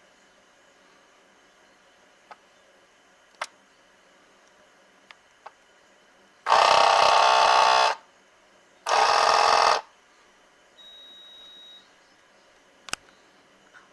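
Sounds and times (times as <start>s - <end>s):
harsh refrigerator buzzes: 0.0s - 13.9s
faint steady high tone: 10.7s - 13.9s.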